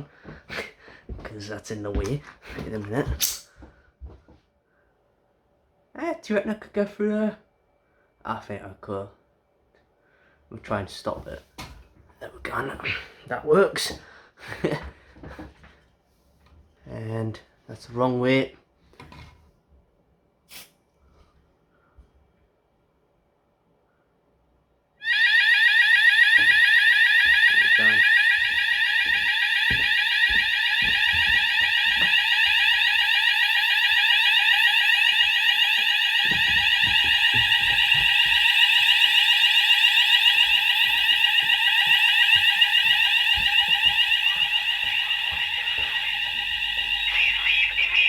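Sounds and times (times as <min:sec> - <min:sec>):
fire alarm sweeping electronic tone: 0:25.0 - 0:48.0.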